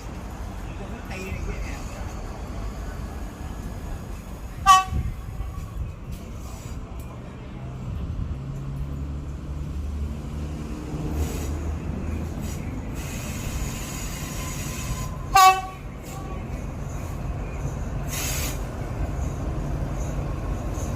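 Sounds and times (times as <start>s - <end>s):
diesel locomotive engine rumble: 0.0s - 20.9s
train rolling noise: 0.0s - 20.9s
train horn toot: 4.6s - 5.8s, 15.3s - 16.5s.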